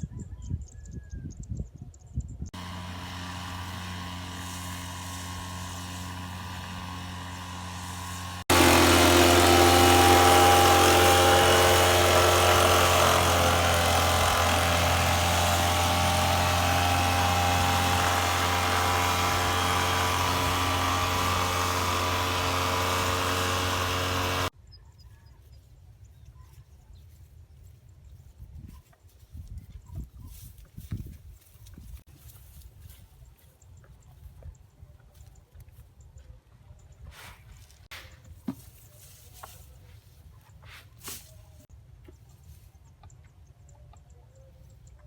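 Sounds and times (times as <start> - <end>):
small engine running: 2.5 - 24.6.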